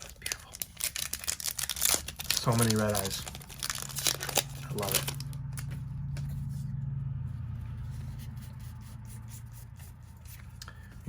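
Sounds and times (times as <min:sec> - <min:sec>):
trading cards being handled: 0:00.0 - 0:06.7, 0:07.7 - 0:11.0
low hum: 0:03.2 - 0:11.0.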